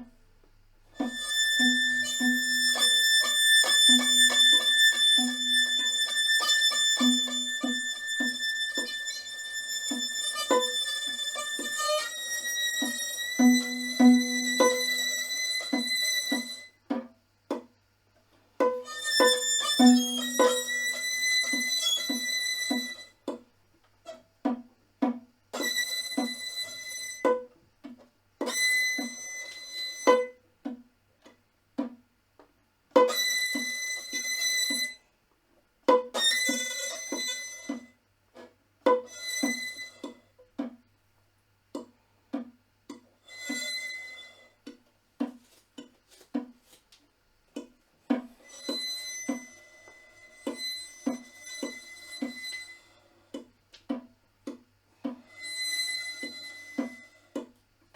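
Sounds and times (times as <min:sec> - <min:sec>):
high violin-like notes: 0:01.0 - 0:16.8, 0:18.6 - 0:23.2, 0:25.6 - 0:27.4, 0:28.5 - 0:30.4, 0:33.0 - 0:35.0, 0:36.2 - 0:37.9, 0:38.9 - 0:40.2, 0:43.3 - 0:44.5, 0:48.4 - 0:53.1, 0:55.3 - 0:57.3.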